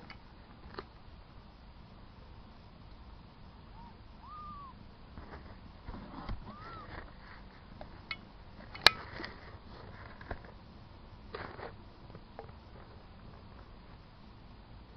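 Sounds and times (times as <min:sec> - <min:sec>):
kitten mewing: 0:03.8 - 0:04.8, 0:06.4 - 0:06.9.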